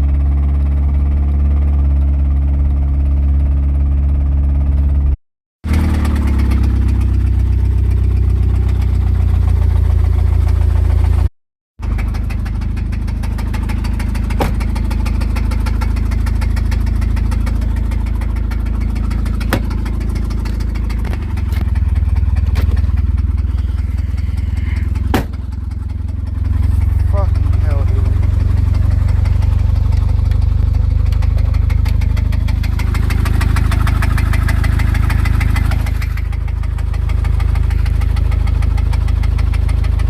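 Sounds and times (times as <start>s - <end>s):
car engine knocking: 0.1s - 40.0s.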